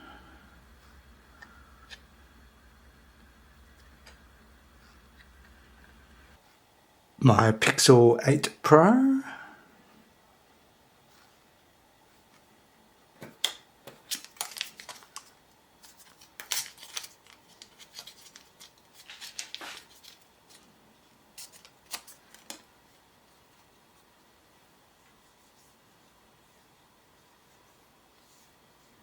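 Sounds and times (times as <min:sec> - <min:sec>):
packaging crinkling and tearing: 0:14.0 - 0:20.7, 0:21.4 - 0:22.7.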